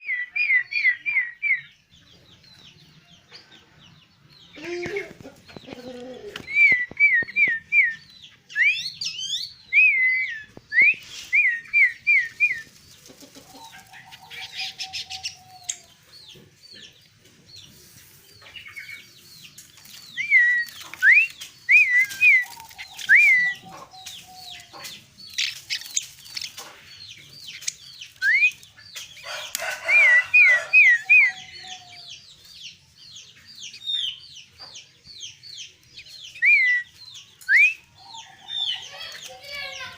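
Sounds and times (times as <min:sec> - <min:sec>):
bird singing whistled notes: 0:00.0 - 0:01.8, 0:06.4 - 0:12.7, 0:20.0 - 0:24.6, 0:27.5 - 0:29.2, 0:29.8 - 0:31.9, 0:36.0 - 0:38.6
lower falling bird call: 0:20.0 - 0:24.7.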